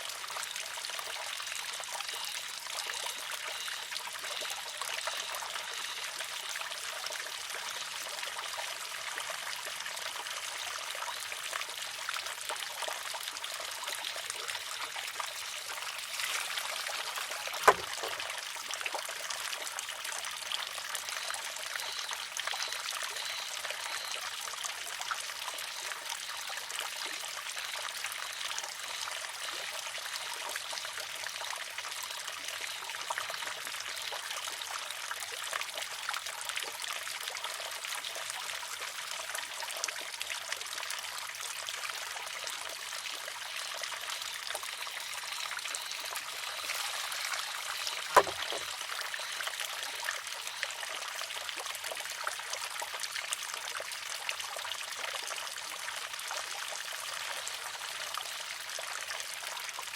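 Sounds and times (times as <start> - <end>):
water trickling: 0.0 - 36.6, 39.3 - 59.4
bamboo arm clacking on rock: 16.2 - 18.3, 47.8 - 48.8.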